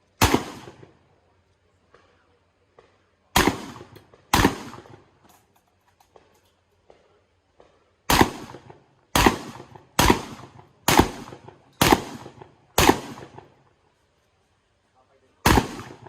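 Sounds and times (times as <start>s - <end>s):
shotgun shots with echo: 0.2s - 0.9s, 3.4s - 5.0s, 8.1s - 13.5s, 15.4s - 16.0s.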